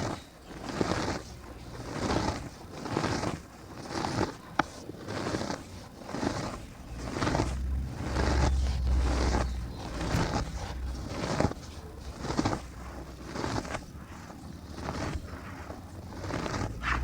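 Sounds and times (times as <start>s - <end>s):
dry dirt crumbling and scraping: 0.0s - 17.0s
low rumble: 6.8s - 13.0s.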